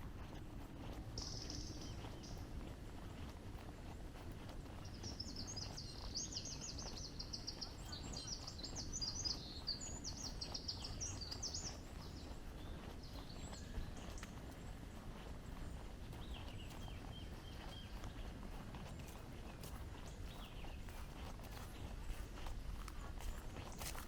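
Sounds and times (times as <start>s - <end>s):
low background noise: 0.0s - 24.0s
songbird trilling: 4.8s - 14.2s.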